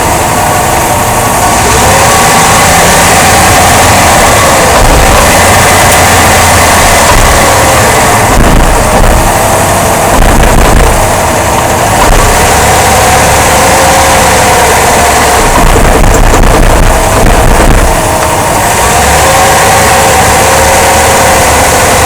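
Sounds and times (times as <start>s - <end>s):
steady hum: 0.0s - 22.0s
suv engine rumbling: 0.0s - 22.0s.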